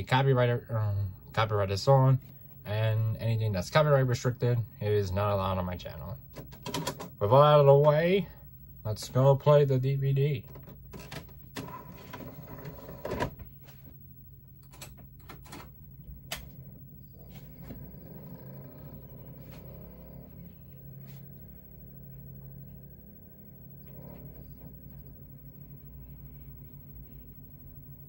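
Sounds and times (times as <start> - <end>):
low electrical hum: 0.0 - 28.0.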